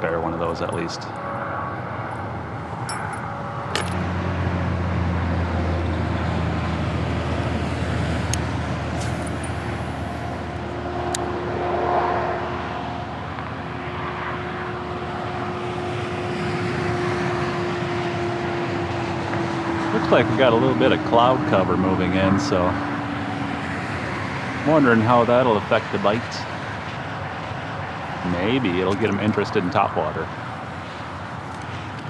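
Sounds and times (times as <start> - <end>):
heavy vehicle low drone passing: 0.0 - 32.0
highway traffic tyre and road noise: 0.0 - 32.0.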